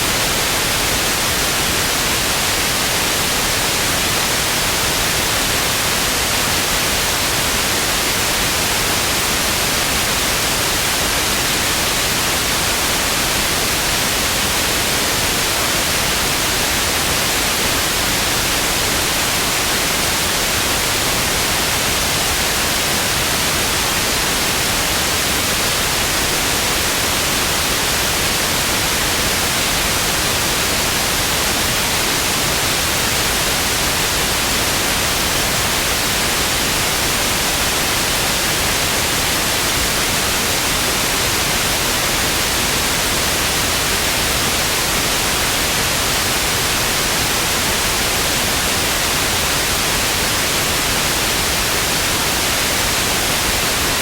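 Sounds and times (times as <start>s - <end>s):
tv static hiss: 0.0s - 54.0s.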